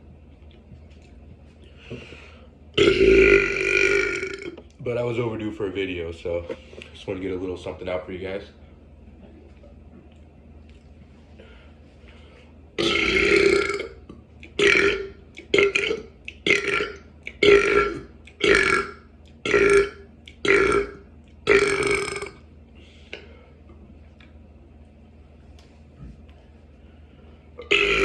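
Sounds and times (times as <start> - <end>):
person belching: 2.8 - 4.6, 12.8 - 14.0, 14.6 - 22.4, 27.6 - 28.0.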